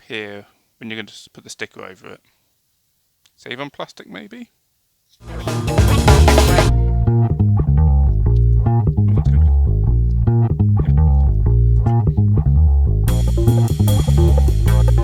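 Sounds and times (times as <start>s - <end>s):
bass and guitar music: 5.3s - 15.0s.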